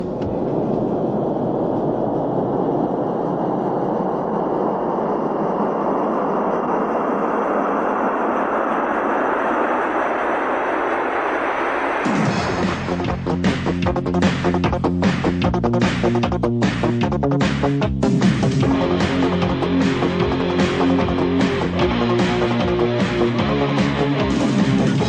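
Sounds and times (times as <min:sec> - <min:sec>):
rising rushing noise swell: 0:00.0 - 0:15.4
synth-pop beat and bass: 0:12.1 - 0:25.0.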